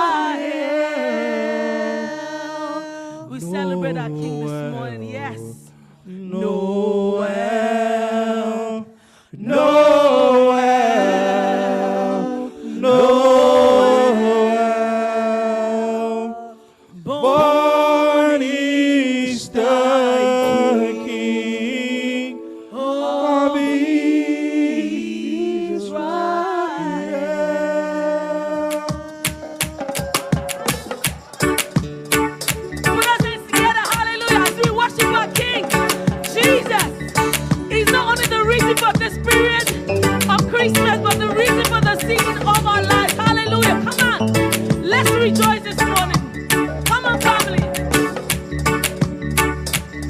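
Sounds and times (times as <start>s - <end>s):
voices singing unaccompanied: 0.0s - 31.8s, 32.9s - 48.0s
singers breathing: 8.9s - 9.4s, 37.2s - 37.7s.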